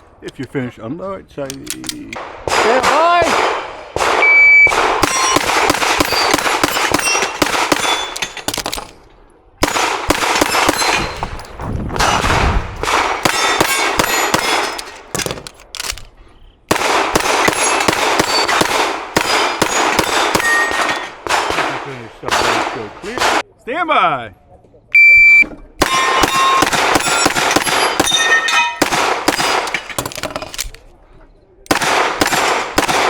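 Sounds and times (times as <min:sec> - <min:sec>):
rapid pistol fire: 0:02.2 - 0:08.9, 0:09.6 - 0:11.4, 0:12.0 - 0:16.0, 0:16.7 - 0:23.4, 0:25.8 - 0:28.2, 0:28.8 - 0:30.4, 0:31.7 - 0:33.0
steel plates clanging: 0:05.0 - 0:09.0, 0:10.3 - 0:11.7, 0:13.1 - 0:16.1, 0:17.2 - 0:21.2, 0:25.8 - 0:30.9.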